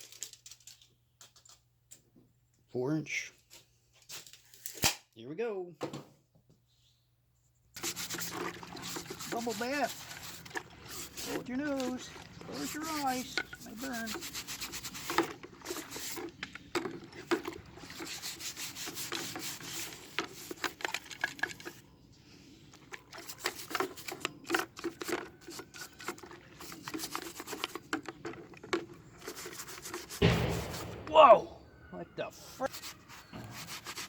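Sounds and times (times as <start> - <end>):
scrubbing on metal clamp: 7.8 - 21.8, 22.8 - 30.2.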